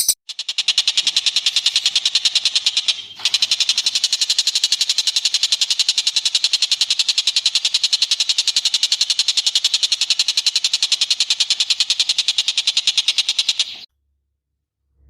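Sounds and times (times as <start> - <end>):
songbird trilling: 1.5 - 13.8.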